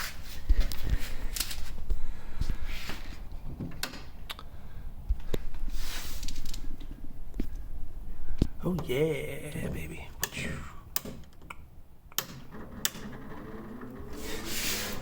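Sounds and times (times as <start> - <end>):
brief scraping hisses: 14.2 - 15.0.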